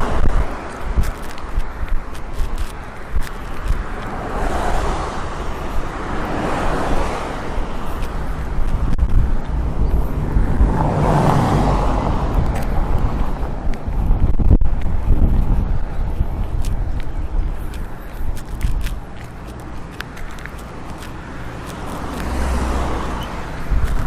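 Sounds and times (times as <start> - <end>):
low rumble: 8.2 - 19.2.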